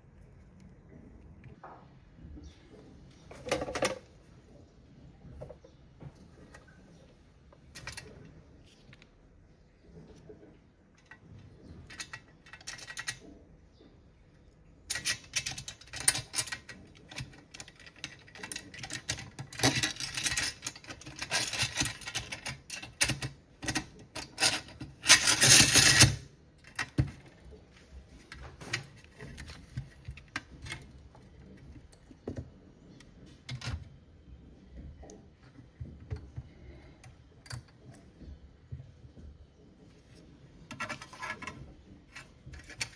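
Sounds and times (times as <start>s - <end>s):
metallic clicks and rattles: 7.6s - 8.3s, 11.0s - 13.4s, 14.9s - 27.4s, 40.1s - 42.9s.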